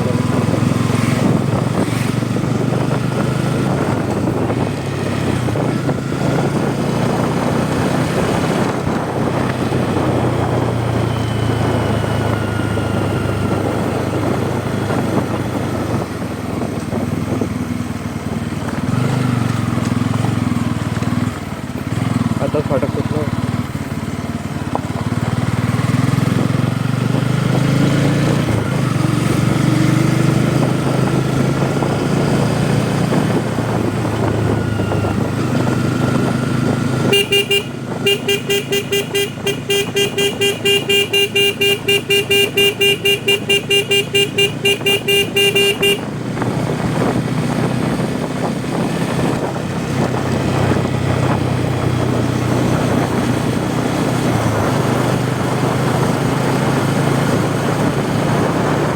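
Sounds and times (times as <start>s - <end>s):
motorcycle engine running: 0.0s - 58.9s
pulsing horn: 37.0s - 46.2s.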